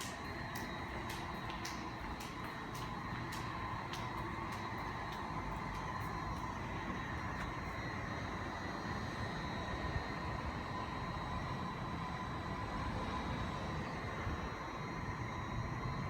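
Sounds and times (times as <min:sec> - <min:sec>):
steady low rumble: 0:00.0 - 0:08.0.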